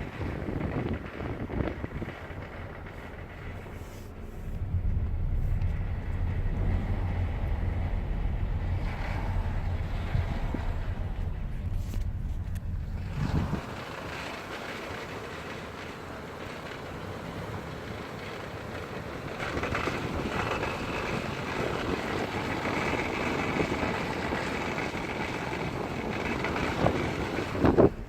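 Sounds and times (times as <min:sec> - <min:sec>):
car driving rumble: 0:00.0 - 0:28.0
high whine: 0:03.5 - 0:13.8.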